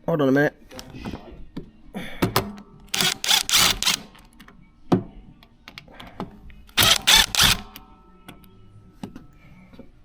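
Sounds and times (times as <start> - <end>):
power driver loosening screws: 3.0 - 4.2, 6.8 - 7.7.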